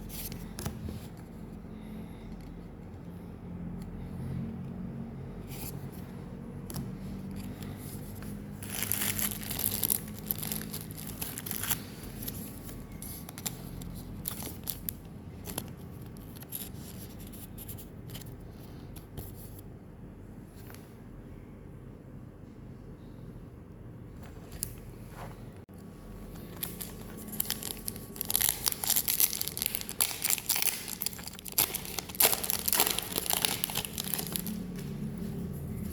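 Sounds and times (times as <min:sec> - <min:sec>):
cards handled with clicks and rustles: 0:00.0 - 0:03.0, 0:05.2 - 0:19.7, 0:25.8 - 0:35.9
foil wrapper tearing and crinkling: 0:08.6 - 0:12.4, 0:26.6 - 0:34.7.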